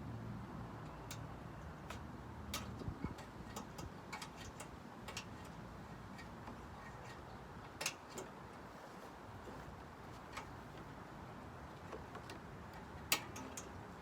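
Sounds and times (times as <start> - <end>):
steel rod clicking and tapping: 0.9 - 8.3, 11.9 - 13.9.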